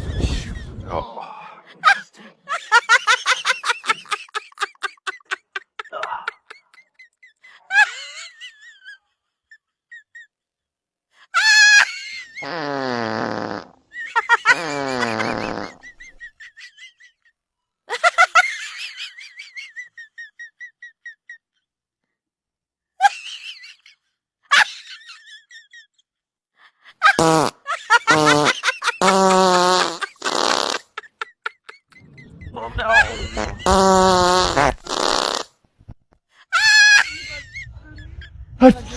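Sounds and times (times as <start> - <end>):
buzzy fart noises: 12.4 - 13.8, 14.5 - 16.0, 27.2 - 31.0, 32.5 - 35.6.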